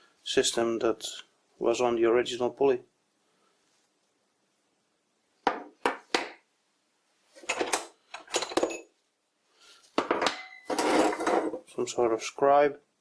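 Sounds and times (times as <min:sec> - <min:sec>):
metal tools clinking: 0:10.2 - 0:11.6.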